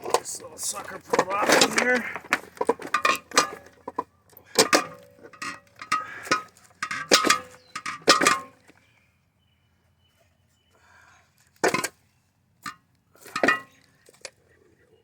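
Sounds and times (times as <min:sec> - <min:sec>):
metal parts clanging: 0:00.0 - 0:08.6.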